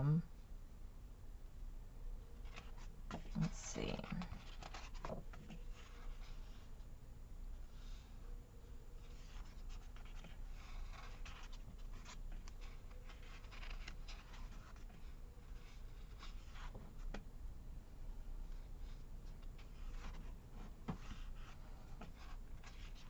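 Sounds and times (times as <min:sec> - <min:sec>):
paper rustling: 0:02.4 - 0:06.7, 0:09.0 - 0:17.2, 0:18.5 - 0:23.0.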